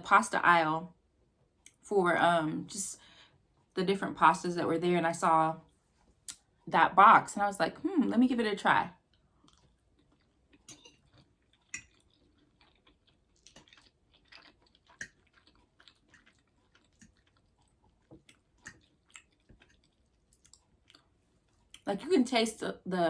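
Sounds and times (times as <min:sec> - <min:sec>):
wet mouth chewing sounds: 0:09.1 - 0:21.9.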